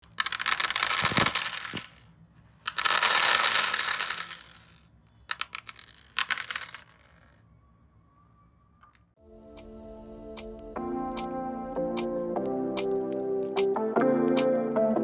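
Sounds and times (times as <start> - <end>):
plastic plugs rattling together: 0.1 - 2.1, 2.7 - 7.2.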